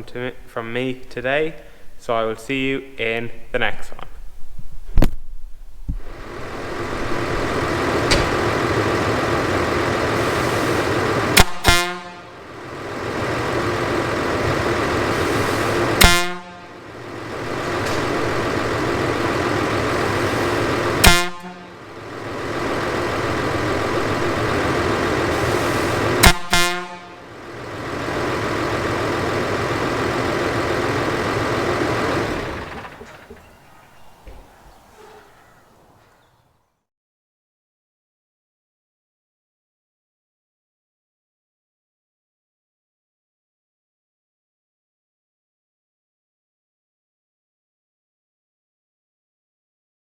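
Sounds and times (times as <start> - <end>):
tractor engine running: 0.0 - 36.5
air horn blasts: 10.0 - 13.9, 14.5 - 28.3.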